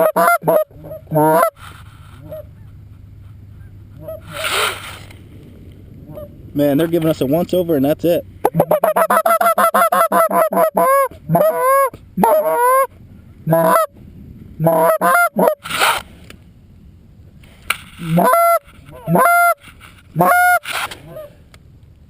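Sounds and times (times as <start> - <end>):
goose call clucks and honks: 0.0 - 3.0, 3.6 - 4.8, 8.4 - 13.9, 14.6 - 15.7, 18.0 - 21.3
brief rush of noise: 4.2 - 5.2.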